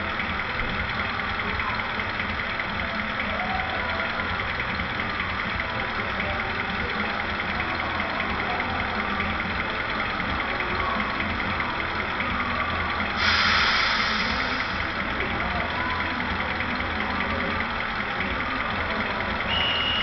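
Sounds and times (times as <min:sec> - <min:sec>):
model diesel engine idling: 0:00.0 - 0:20.0
loud hiss: 0:13.2 - 0:15.0.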